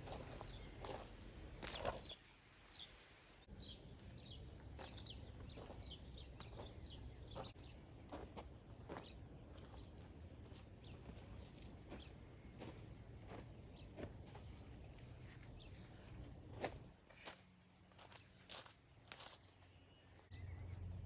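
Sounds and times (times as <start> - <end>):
small birds chirping: 0.0 - 21.0.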